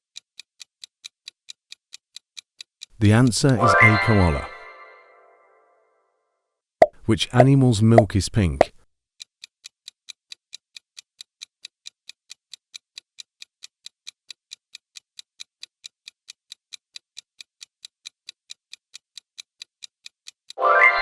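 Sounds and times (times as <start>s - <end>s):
clock ticking: 9.3s - 20.6s.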